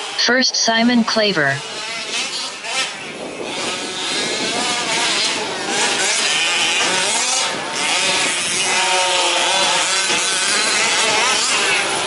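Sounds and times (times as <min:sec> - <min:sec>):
model truck engines revving: 0:00.0 - 0:12.0.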